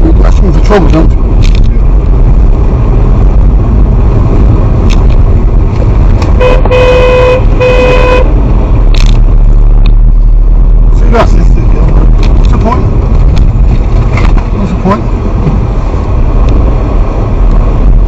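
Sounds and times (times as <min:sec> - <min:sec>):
car engine and road rumble: 0:00.0 - 0:18.0
car horn blaring: 0:06.3 - 0:08.4.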